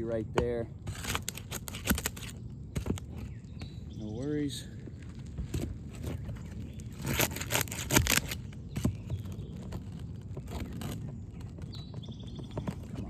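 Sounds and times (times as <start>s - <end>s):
tool scraping roof shingles: 0.0s - 13.0s.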